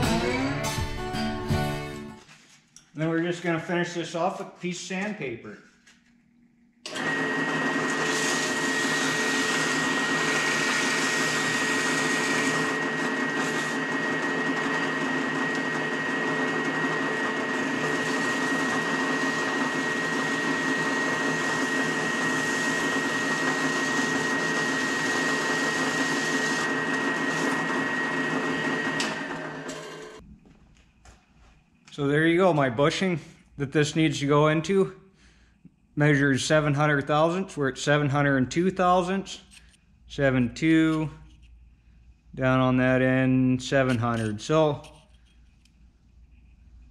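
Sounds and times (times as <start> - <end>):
drill press whining: 6.8 - 30.2
sandpaper against spinning metal: 8.0 - 13.9, 17.7 - 27.6.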